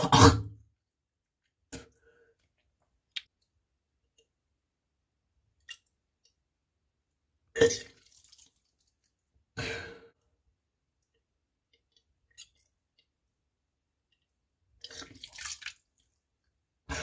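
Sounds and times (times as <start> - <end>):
throat sounds coughs or burps: 0.0 - 0.6, 7.5 - 8.0.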